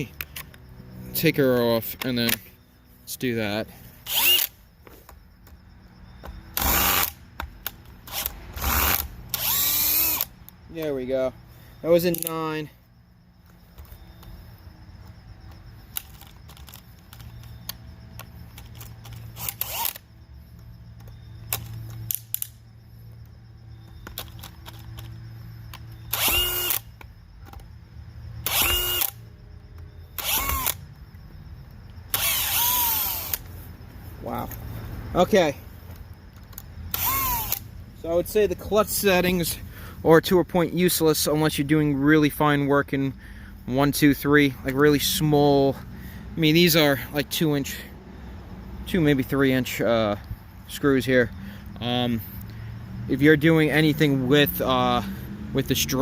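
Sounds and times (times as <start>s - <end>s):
cordless drill motor whining: 4.0s - 4.6s, 6.5s - 7.2s, 8.1s - 10.3s, 19.3s - 20.0s, 26.0s - 26.9s, 28.4s - 29.2s, 30.1s - 30.8s, 32.1s - 33.5s, 36.9s - 37.7s.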